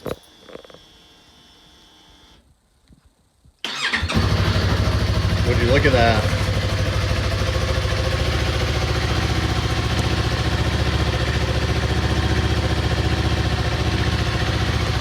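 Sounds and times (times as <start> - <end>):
motorcycle engine idling: 3.7 - 15.0.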